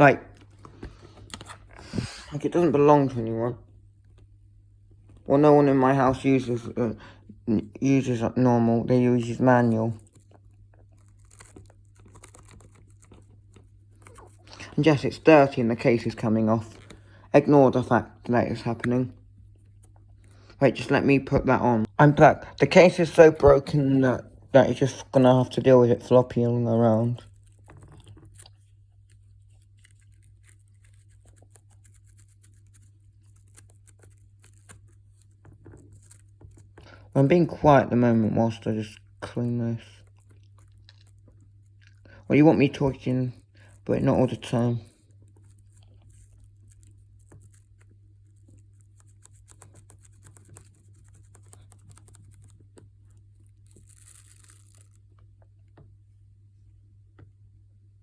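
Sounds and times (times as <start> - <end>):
low steady hum: 0.0 - 58.0
toothbrush bristles scratching: 9.0 - 16.8, 26.7 - 38.8, 42.4 - 55.0.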